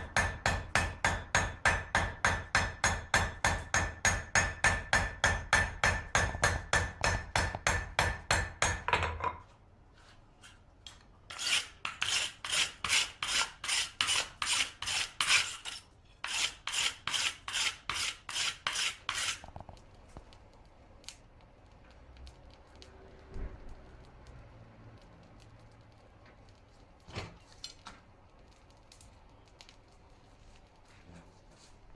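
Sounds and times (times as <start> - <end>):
hammer striking metal on anvil: 0.0 - 9.4
file rasping across metal: 11.3 - 19.4.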